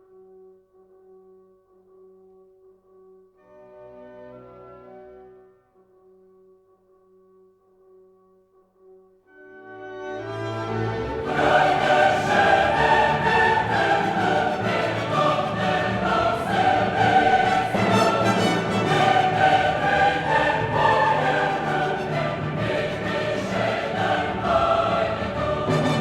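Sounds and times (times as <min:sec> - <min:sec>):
choral and orchestral music: 0:03.4 - 0:06.0, 0:09.3 - 0:26.0.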